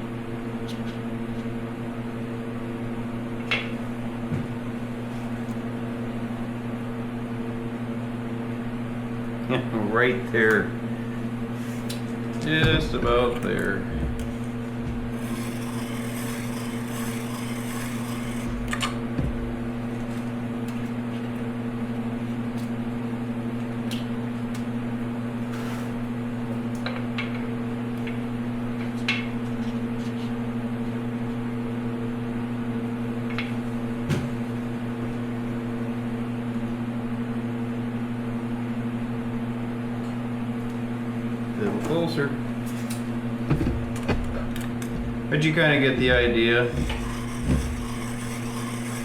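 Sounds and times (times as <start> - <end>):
grinder motor humming: 12.5 - 20.2, 44.9 - 49.0
grinding hiss: 15.1 - 19.0, 46.1 - 49.0.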